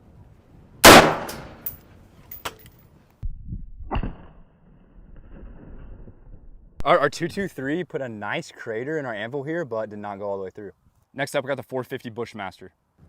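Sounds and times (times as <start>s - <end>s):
rifle shot: 0.8s - 1.7s.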